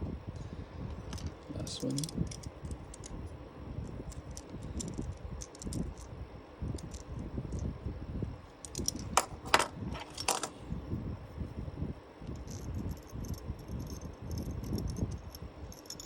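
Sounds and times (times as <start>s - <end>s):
plastic parts clicking and rattling: 1.1s - 3.2s, 4.1s - 6.1s, 8.6s - 10.5s.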